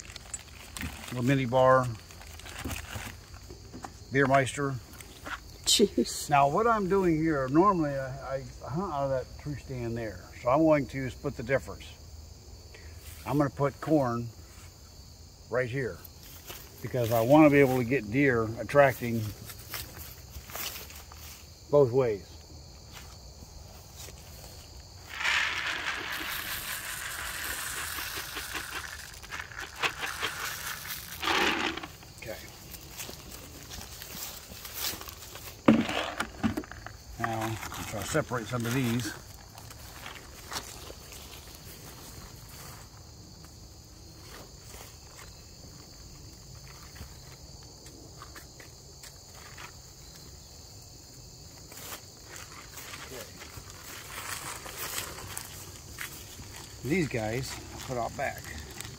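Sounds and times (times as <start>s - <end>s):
bag of corn rustling and rattling: 0.0s - 3.5s, 25.0s - 41.6s, 52.3s - 58.9s
crickets chirping: 0.0s - 58.9s
footsteps: 19.0s - 21.5s, 22.8s - 43.6s.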